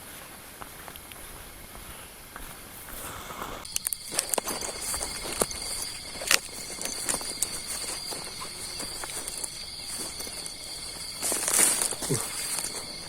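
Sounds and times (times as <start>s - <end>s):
footsteps through vegetation: 0.0s - 13.0s
insects chirring: 3.6s - 13.0s.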